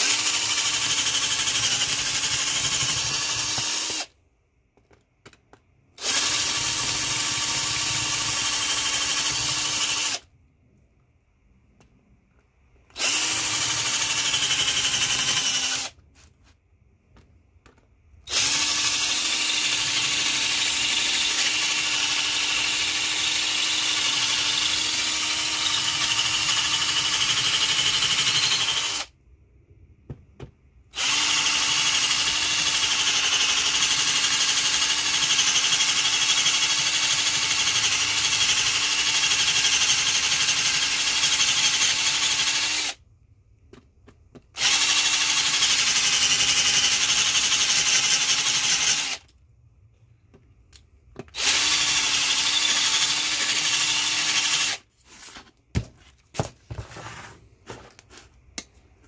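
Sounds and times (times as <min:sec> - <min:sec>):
power drill running: 0:00.0 - 0:04.1, 0:06.0 - 0:10.2, 0:12.9 - 0:16.0, 0:18.3 - 0:29.1, 0:31.0 - 0:43.0, 0:44.6 - 0:49.2, 0:51.4 - 0:54.8.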